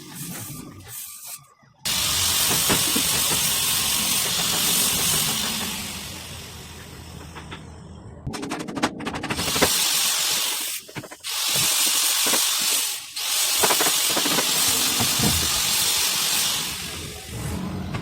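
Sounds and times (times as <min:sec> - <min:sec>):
air gun hissing: 0:01.9 - 0:06.9, 0:09.4 - 0:17.4.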